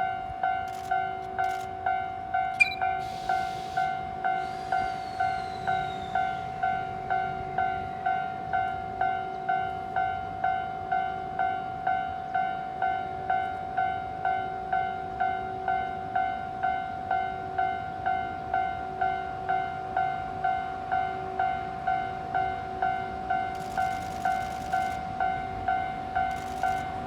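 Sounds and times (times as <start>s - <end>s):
level-crossing warning bell ringing: 0.0s - 27.0s.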